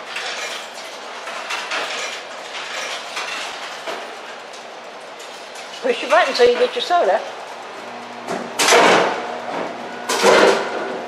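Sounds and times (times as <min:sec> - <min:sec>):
coins rattling through vending machine: 0:00.0 - 0:04.3.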